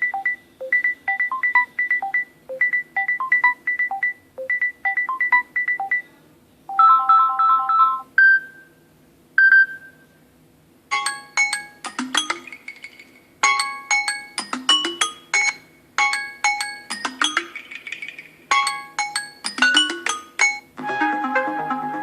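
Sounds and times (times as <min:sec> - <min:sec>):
dense electronic ringtone: 0:00.0 - 0:06.0, 0:06.8 - 0:08.1, 0:10.9 - 0:17.6, 0:18.5 - 0:22.0
chiming phone ringtone: 0:06.8 - 0:08.1, 0:10.9 - 0:17.7, 0:18.5 - 0:21.8.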